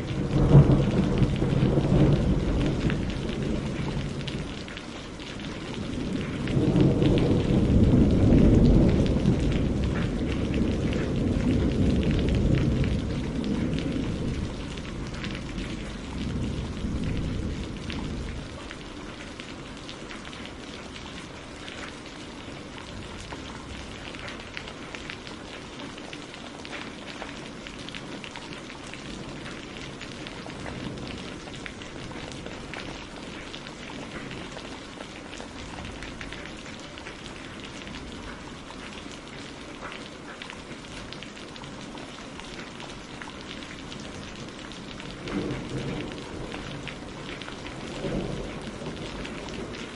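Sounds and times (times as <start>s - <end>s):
low thunder rumble: 0.0s - 21.6s, 28.9s - 34.7s, 43.6s - 49.9s
steady rain falling: 0.0s - 49.9s.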